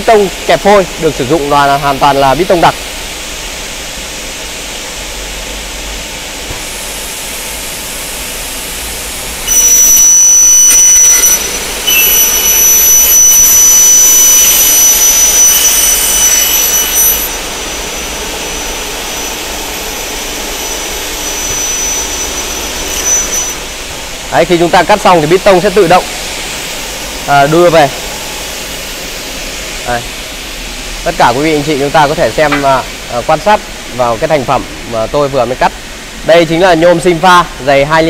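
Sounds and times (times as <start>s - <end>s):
saw cutting through aluminium: 9.5s - 19.8s
saw blades spinning: 9.5s - 23.7s.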